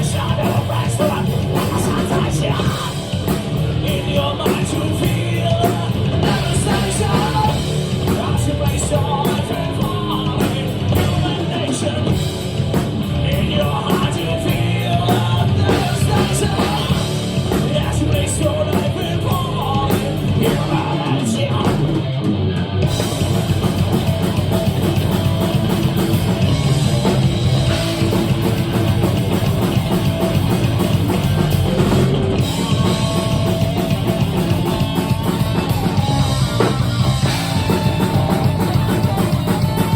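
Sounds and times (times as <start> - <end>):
person singing: 0.0 - 12.4, 13.0 - 21.9
bass: 0.0 - 39.9
distorted electric guitars: 0.0 - 39.9
fast drum kit: 0.0 - 39.9.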